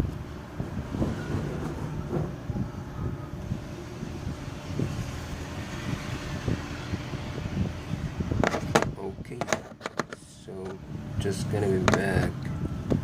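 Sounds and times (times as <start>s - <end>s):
small parts clicking and knocking: 8.4s - 10.8s.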